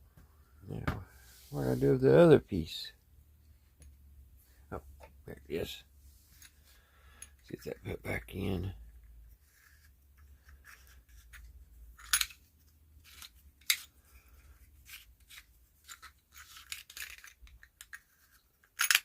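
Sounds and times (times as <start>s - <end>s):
metal flashlight parts scraping: 9.4s - 12.4s, 13.0s - 19.0s.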